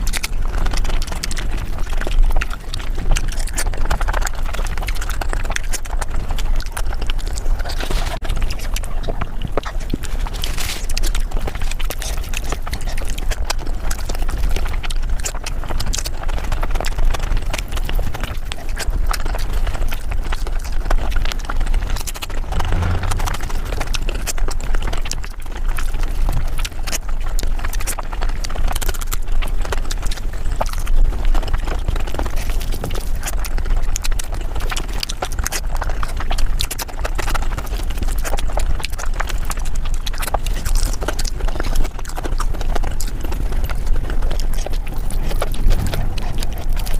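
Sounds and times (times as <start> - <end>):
sped up chewing and smacking: 0.0 - 46.9.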